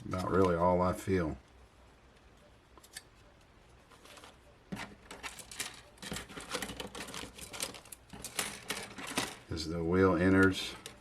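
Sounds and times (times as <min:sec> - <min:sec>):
plastic parts clicking and tapping: 0:04.7 - 0:09.5.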